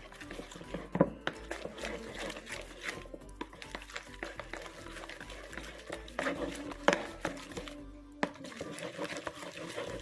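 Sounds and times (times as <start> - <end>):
background music: 0.0 - 10.0.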